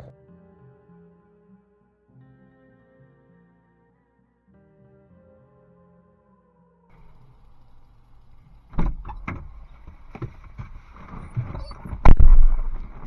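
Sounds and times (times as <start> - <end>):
sharp knocks: 8.7 - 10.8
heavy thump: 8.7 - 13.0
low rumble: 11.0 - 13.0.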